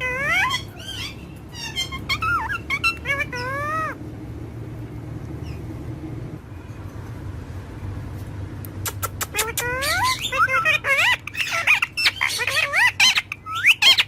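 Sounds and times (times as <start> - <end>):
parrot calling: 0.0 - 4.0, 8.9 - 14.0
low background rumble: 0.0 - 14.0.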